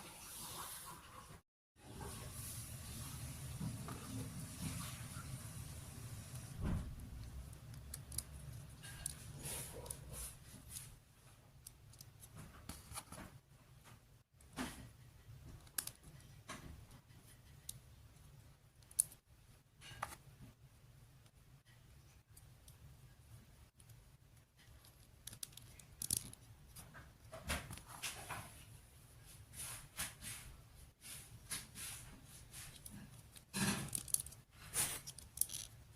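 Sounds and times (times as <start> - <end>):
plastic toy pieces clicking: 7.6 - 9.2, 15.6 - 16.3, 24.7 - 26.4, 33.8 - 34.4, 35.0 - 35.8.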